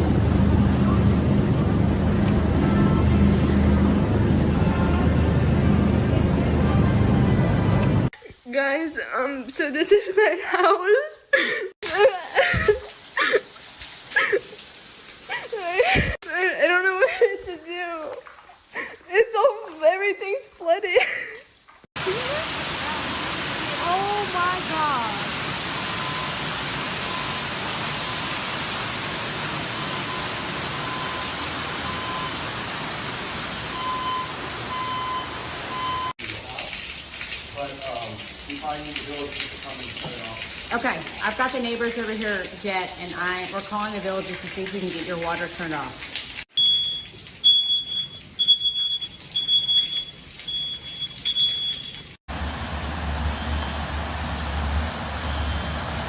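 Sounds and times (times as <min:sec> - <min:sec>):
water gushing from burst pipe: 0:11.4 - 0:19.5, 0:22.0 - 0:56.0
smoke alarm beeping: 0:33.7 - 0:36.1, 0:46.5 - 0:52.2.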